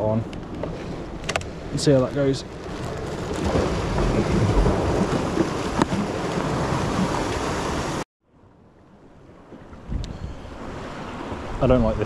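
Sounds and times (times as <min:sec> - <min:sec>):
wind buffeting microphone: 0:00.0 - 0:08.0, 0:09.1 - 0:12.0
surf washing against rocks: 0:01.7 - 0:08.0.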